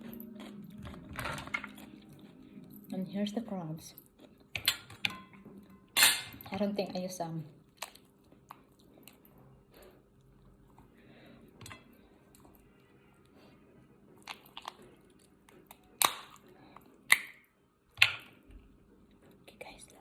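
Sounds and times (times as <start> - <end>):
chewing: 0.0 - 3.0, 3.9 - 4.7, 7.6 - 17.4
crab shells cracking: 7.7 - 9.2, 14.2 - 18.4.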